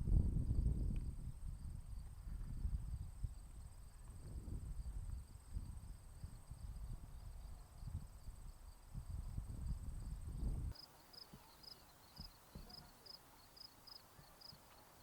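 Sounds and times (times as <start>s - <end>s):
insect chirping: 4.7s - 15.0s
insect trill: 10.8s - 15.0s.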